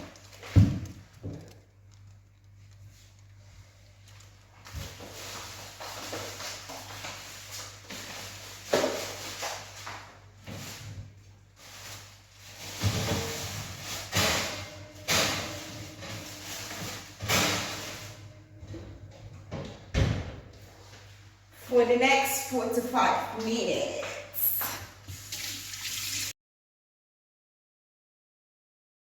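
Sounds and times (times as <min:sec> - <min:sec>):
rustling: 0:00.0 - 0:18.3.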